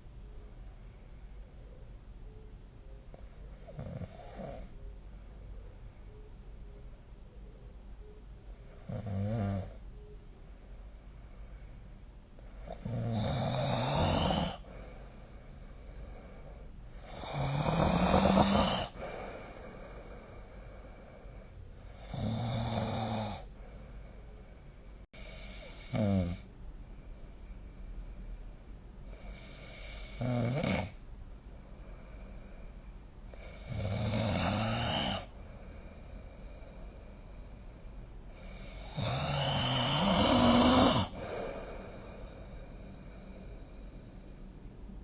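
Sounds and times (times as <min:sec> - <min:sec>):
quiet breathing: 0:00.0 - 0:45.0
person snoring: 0:08.8 - 0:09.8, 0:12.5 - 0:15.3, 0:16.0 - 0:21.0, 0:22.0 - 0:23.5, 0:25.2 - 0:26.5, 0:29.1 - 0:31.0, 0:33.3 - 0:35.4, 0:38.3 - 0:43.9.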